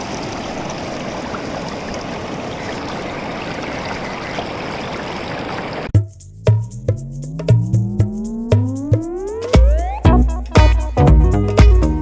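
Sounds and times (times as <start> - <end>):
fast-flowing water rushing: 0.0 - 5.9.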